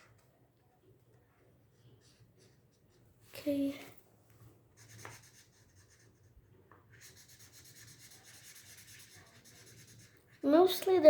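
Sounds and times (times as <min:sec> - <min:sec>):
marker scratching on paper: 0:01.7 - 0:03.0, 0:04.8 - 0:11.0.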